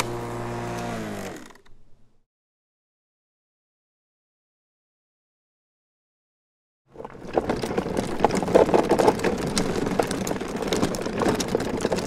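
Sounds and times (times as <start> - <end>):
electric lawn mower running: 0.0 - 1.7
clatter of irregular clicks: 7.0 - 12.0.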